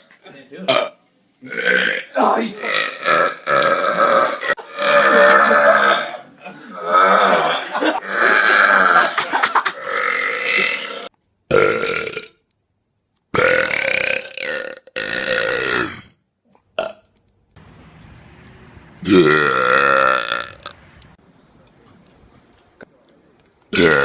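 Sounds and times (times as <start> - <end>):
person belching: 0.7 - 12.4, 13.4 - 16.2, 19.0 - 20.7, 23.7 - 24.0.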